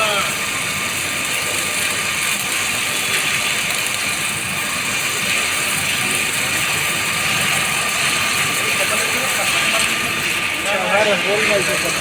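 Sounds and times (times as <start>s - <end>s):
drilling machine running: 0.0s - 12.0s.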